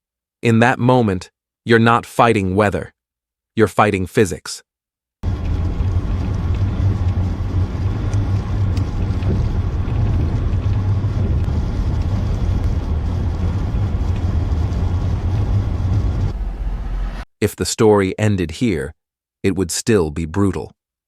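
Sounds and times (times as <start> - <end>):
low rumble of moving vehicle: 5.2 - 17.3.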